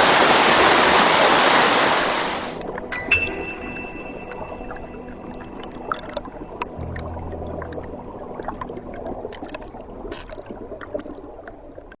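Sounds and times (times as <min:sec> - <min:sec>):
stream water splashing over rocks: 0:00.0 - 0:03.2
small water drips: 0:04.3 - 0:12.0.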